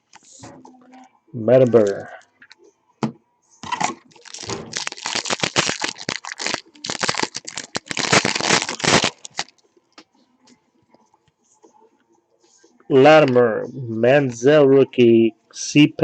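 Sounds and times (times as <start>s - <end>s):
foil wrapper crinkling: 4.1s - 9.6s.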